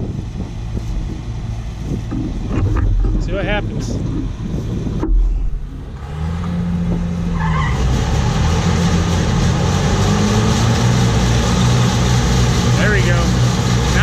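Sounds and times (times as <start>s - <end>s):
combine harvester engine and threshing: 0.0s - 14.0s
low thump: 4.0s - 6.0s.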